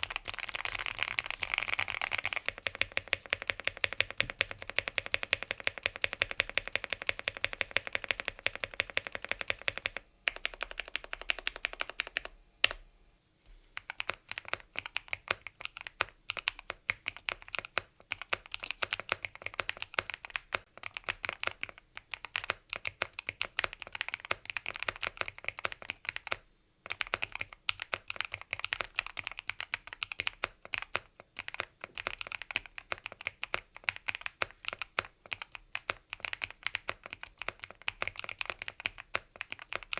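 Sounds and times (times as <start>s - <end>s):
mechanical keyboard typing: 0.0s - 12.8s, 13.8s - 39.9s.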